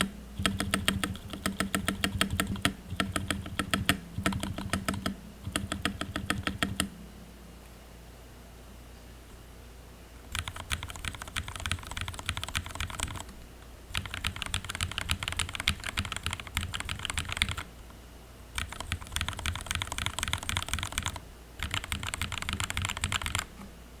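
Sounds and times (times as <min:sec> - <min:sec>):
mechanical keyboard typing: 0:00.0 - 0:06.9, 0:10.3 - 0:13.3, 0:13.9 - 0:17.7, 0:18.6 - 0:23.5.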